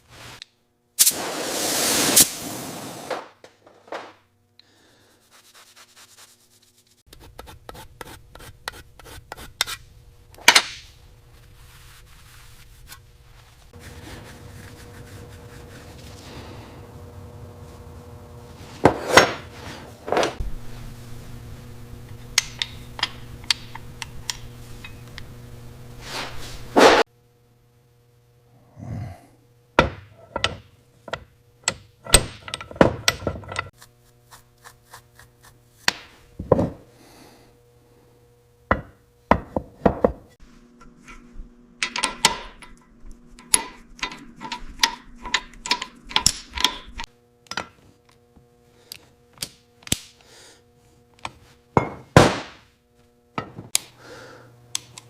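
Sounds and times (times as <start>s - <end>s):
machine hum: 13.4s - 34.3s
tool knocks and clicks: 29.8s - 33.7s, 35.9s - 36.8s, 38.7s - 40.3s, 51.2s - 52.3s, 53.4s - 53.8s.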